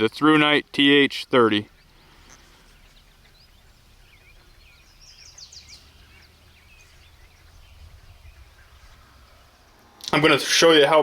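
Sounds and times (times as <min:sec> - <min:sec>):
birds chirping: 0:00.0 - 0:11.0
low background rumble: 0:01.6 - 0:10.0.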